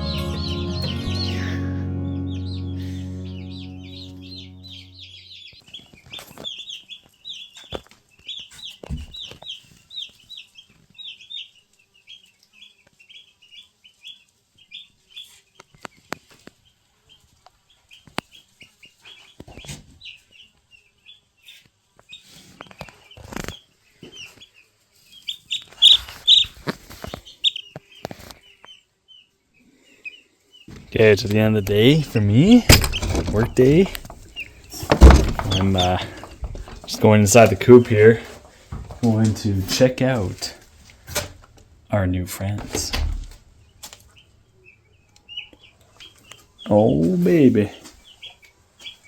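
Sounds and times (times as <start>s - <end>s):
background music: 0.0s - 5.4s
chicks peeping: 0.0s - 40.5s
sharp knocks: 32.6s - 34.3s, 34.9s - 35.8s.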